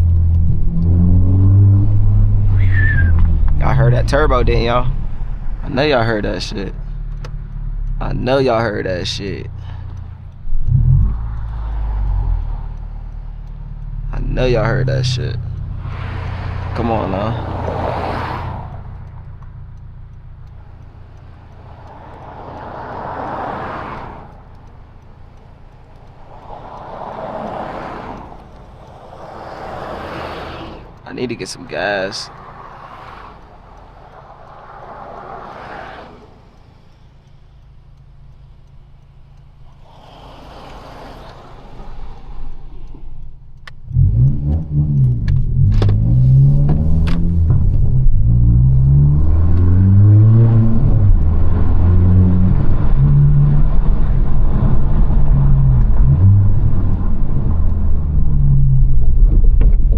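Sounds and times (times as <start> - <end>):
low engine drone: 0.0 - 22.5, 28.4 - 59.9
sharp clicks: 0.0 - 59.9
rushing noise: 26.1 - 36.9.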